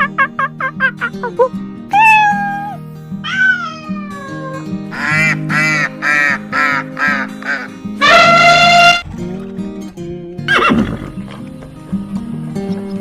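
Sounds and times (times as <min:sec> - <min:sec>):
background music: 0:00.0 - 0:13.0
cat meowing: 0:01.9 - 0:04.7
quacking calls: 0:04.9 - 0:09.0.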